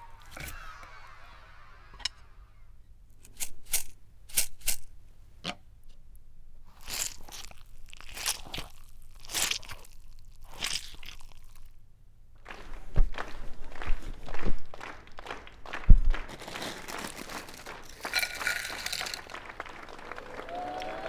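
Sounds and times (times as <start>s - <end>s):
crunching scrapes: 16.3s - 20.2s
sharp cracks: 16.3s - 21.0s.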